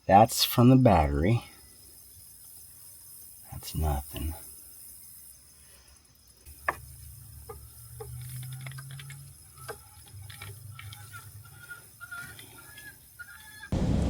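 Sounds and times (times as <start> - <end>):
steady low hum: 13.7 - 14.0.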